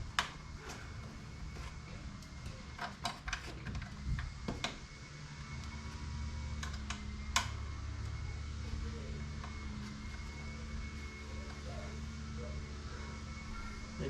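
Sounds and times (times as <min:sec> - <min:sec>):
low steady hum: 0:00.0 - 0:14.0
screwdriver and plastic parts clicking: 0:02.8 - 0:04.8.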